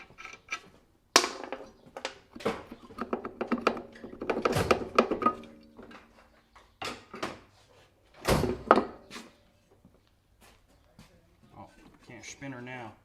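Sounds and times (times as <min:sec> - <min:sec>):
metal knocks and clatter: 0:01.2 - 0:07.5.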